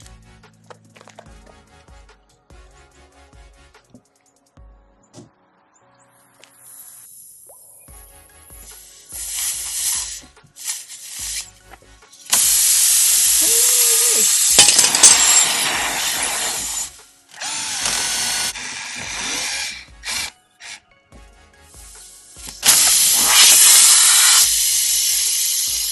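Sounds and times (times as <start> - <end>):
air hissing from tire: 8.5 - 17.1, 21.6 - 25.9
impact driver whirring: 12.3 - 20.8, 22.4 - 25.9.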